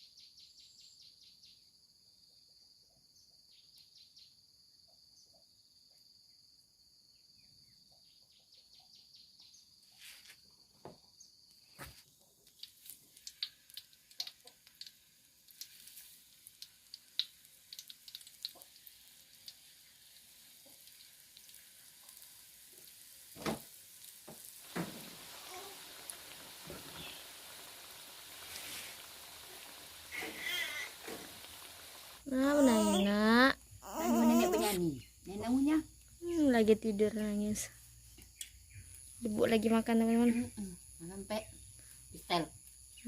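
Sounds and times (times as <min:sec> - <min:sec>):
pastries sizzling in hot oil: 0:11.8 - 0:43.0
high insect buzz: 0:24.3 - 0:43.0.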